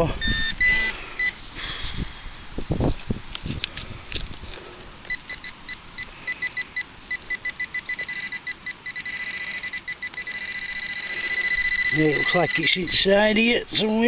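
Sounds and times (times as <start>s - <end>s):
pinpointer beeping: 0.0s - 1.4s, 5.1s - 13.9s
soft clicks of soil handling: 2.8s - 6.2s.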